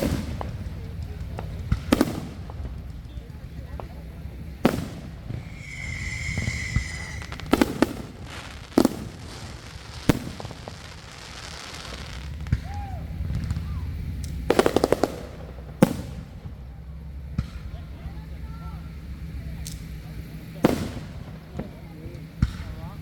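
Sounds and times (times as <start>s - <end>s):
firework bangs: 4.6s - 12.6s
firework high whistle: 5.3s - 9.0s.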